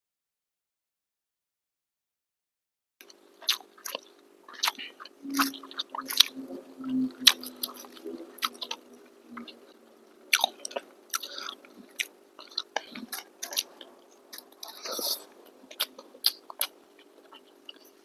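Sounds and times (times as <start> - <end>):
wet chewing and biting sounds: 3.0 - 6.3, 7.2 - 9.6, 10.3 - 18.0.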